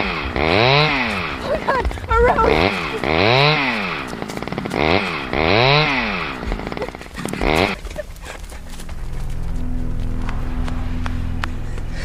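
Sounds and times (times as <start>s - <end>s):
chainsaw revving: 0.0s - 8.8s
low engine hum: 0.0s - 12.0s.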